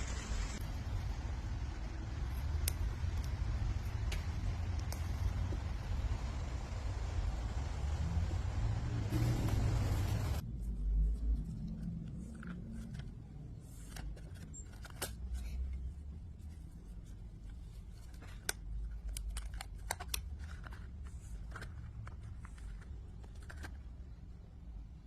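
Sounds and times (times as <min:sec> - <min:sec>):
low steady rumble: 0:00.0 - 0:25.0
sharp clicks and snips: 0:02.3 - 0:05.4, 0:18.0 - 0:24.0.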